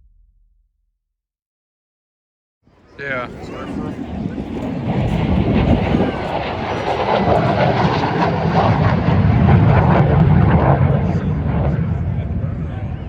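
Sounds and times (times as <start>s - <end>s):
jet engine rumbling: 2.9s - 13.0s.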